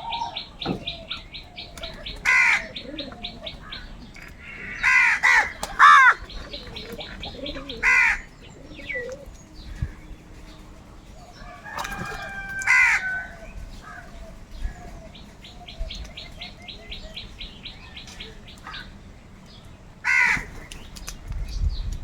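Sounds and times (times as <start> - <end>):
crows cawing: 0.0 - 8.3, 12.2 - 14.3, 20.0 - 20.6.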